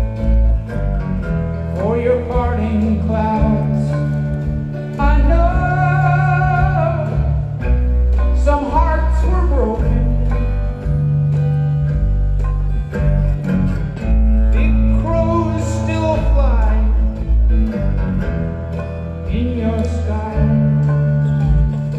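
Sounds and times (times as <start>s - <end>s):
guitars: 0.0s - 21.9s
sustained bass: 0.0s - 21.9s
person singing: 1.7s - 11.5s, 14.5s - 17.8s, 18.8s - 21.9s.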